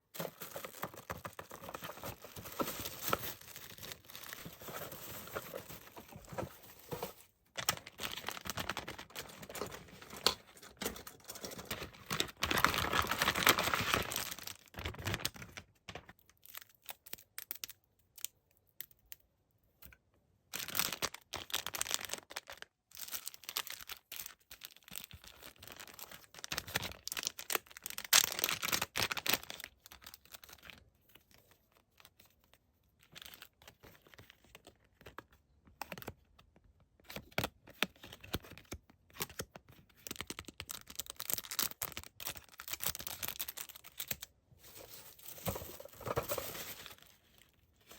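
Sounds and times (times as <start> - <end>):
plastic crinkling: 0.1 - 16.1, 40.1 - 47.9.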